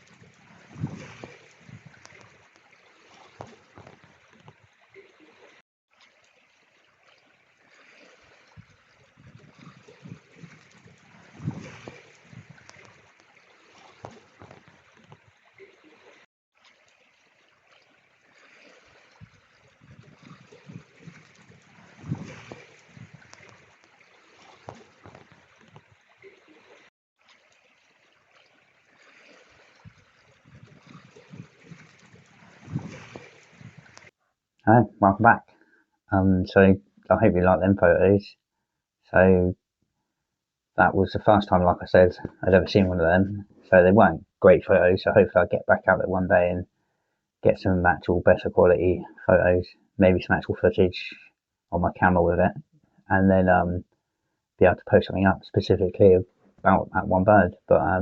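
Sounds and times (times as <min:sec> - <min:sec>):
trickling gurgling water: 0:00.0 - 0:40.2, 0:40.8 - 0:58.0.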